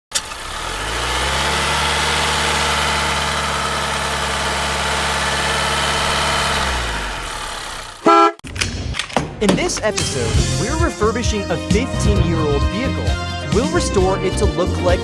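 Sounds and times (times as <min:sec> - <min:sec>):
car engine idling: 0:09.2 - 0:15.0.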